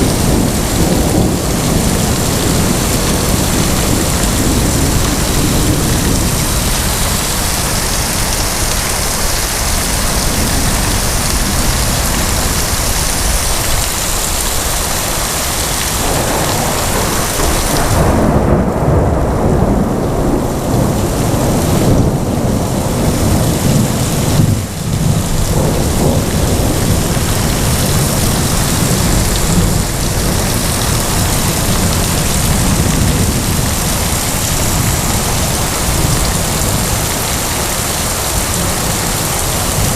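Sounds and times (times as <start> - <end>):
heavy rain falling: 0.0 - 39.9
thunder rumbling: 0.0 - 39.9.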